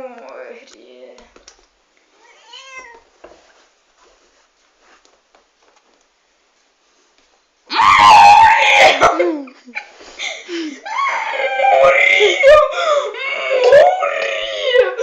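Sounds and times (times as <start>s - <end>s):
high screaming cries: 7.7s - 9.2s, 10.8s - 15.0s.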